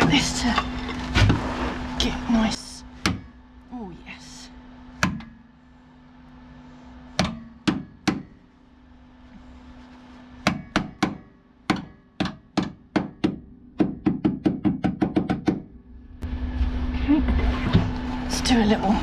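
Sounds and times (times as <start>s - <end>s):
hammer striking steel panel: 7.2s - 8.4s, 10.4s - 15.8s.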